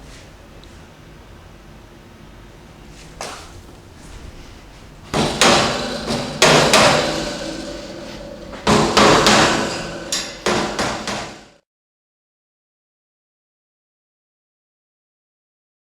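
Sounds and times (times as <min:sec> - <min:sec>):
rubber mallet striking steel shelf: 0:05.1 - 0:11.5
shelf ringing rattle: 0:05.1 - 0:11.5.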